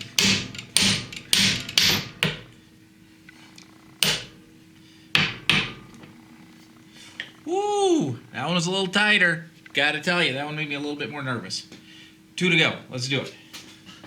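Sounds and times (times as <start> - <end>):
hammer striking metal sleeve: 0.0 - 2.6, 4.0 - 4.5, 5.2 - 6.2.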